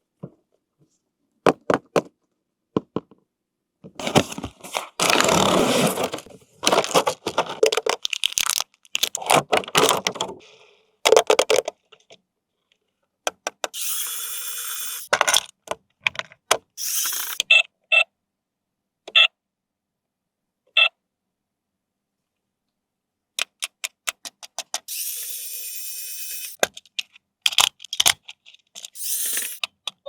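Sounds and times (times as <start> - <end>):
plastic parts clicking and knocking: 1.4 - 3.2, 3.8 - 10.4, 11.0 - 12.2, 13.2 - 13.8, 15.1 - 17.4, 23.4 - 25.0, 26.5 - 30.0
packaging rustling and tearing: 4.0 - 10.2.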